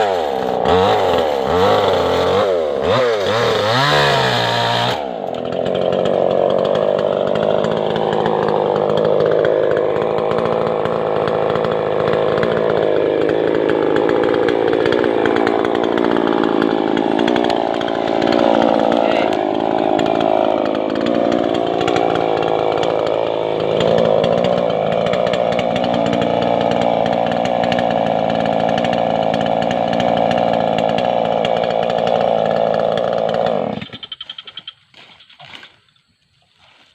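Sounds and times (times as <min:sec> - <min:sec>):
chainsaw cutting wood: 0:00.0 - 0:36.9.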